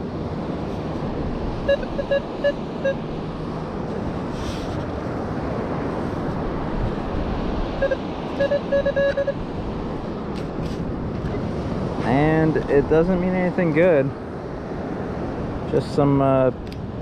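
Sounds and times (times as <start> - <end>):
wind noise: 0.0 - 13.6
metal detector beeps: 1.6 - 3.1, 7.8 - 9.4.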